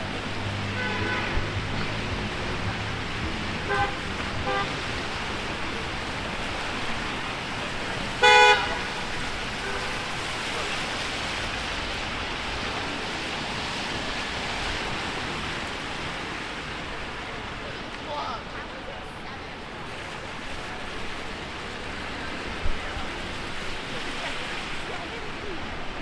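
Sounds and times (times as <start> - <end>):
traffic on wet streets: 0.0 - 26.0
car horns: 0.6 - 1.8, 3.6 - 5.0, 8.1 - 10.2.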